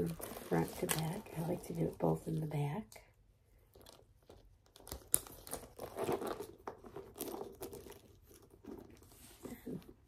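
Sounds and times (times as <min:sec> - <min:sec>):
packaging rustling and crinkling: 0:00.0 - 0:02.4, 0:03.7 - 0:09.8.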